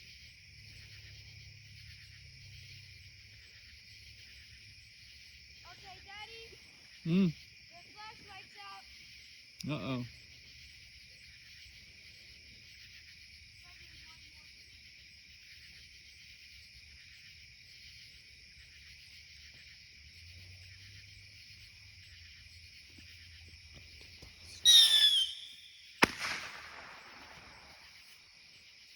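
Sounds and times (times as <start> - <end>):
crickets chirping: 0.0 - 28.9
firework whistling: 24.4 - 28.2
firework bang echoing: 24.6 - 28.0.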